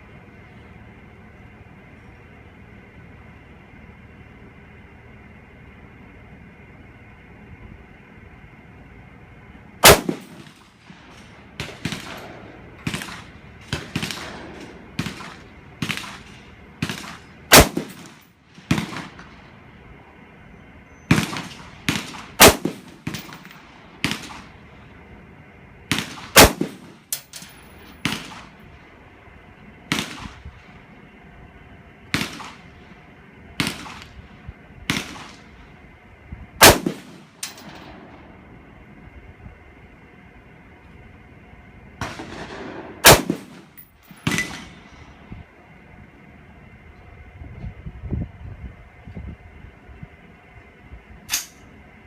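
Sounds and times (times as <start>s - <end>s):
rifle shots: 9.8s - 19.5s, 21.1s - 24.7s, 25.9s - 28.6s, 29.9s - 30.4s, 32.1s - 32.9s, 33.6s - 34.3s, 34.9s - 35.6s, 36.6s - 38.4s, 42.0s - 45.0s.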